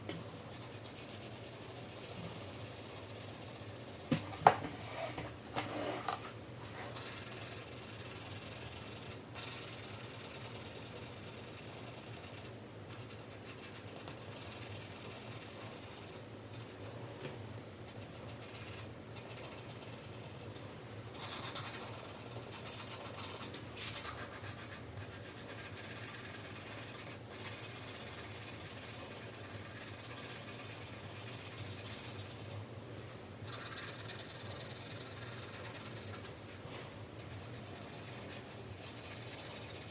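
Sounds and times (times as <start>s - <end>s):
pencil shading on paper: 33.5s - 36.2s, 37.2s - 39.9s.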